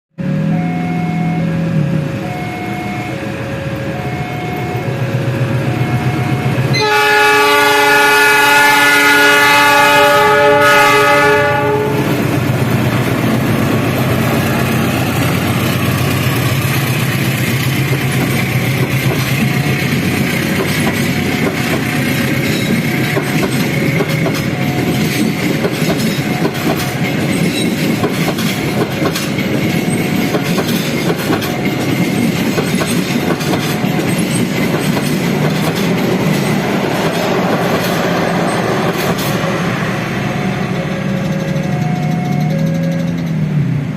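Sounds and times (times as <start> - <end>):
two-note warning beeps: 0.5 - 1.6, 2.2 - 5.0, 40.8 - 43.3
train horn blast: 5.7 - 12.3
train wheels clattering: 12.0 - 39.8.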